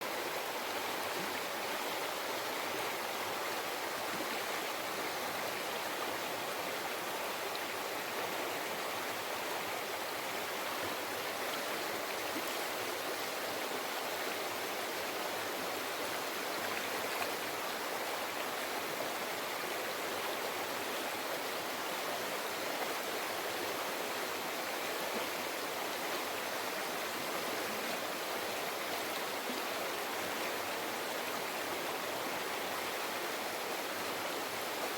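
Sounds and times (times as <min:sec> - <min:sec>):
river flowing over rocks: 0:00.0 - 0:34.9.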